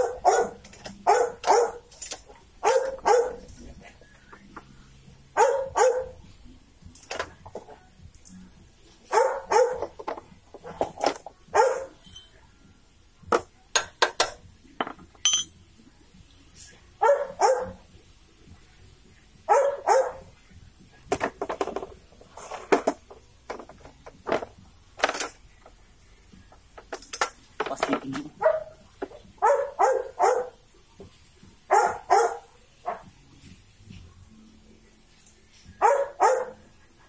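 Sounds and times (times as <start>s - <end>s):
dog barking: 0.0s - 1.9s, 2.6s - 3.6s, 5.4s - 6.2s, 9.1s - 9.9s, 11.5s - 12.0s, 17.0s - 17.8s, 19.5s - 20.3s, 28.4s - 28.8s, 29.4s - 30.6s, 31.7s - 33.1s, 35.8s - 36.7s.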